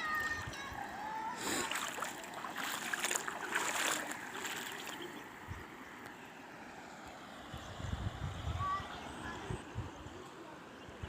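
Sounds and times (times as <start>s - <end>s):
steady wash of water: 0.0s - 5.8s
water splashing: 1.4s - 5.2s.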